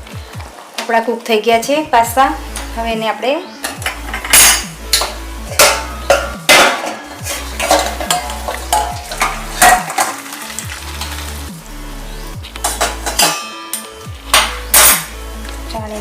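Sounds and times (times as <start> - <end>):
spoon stirring pasta in a pot: 7.2 - 11.4.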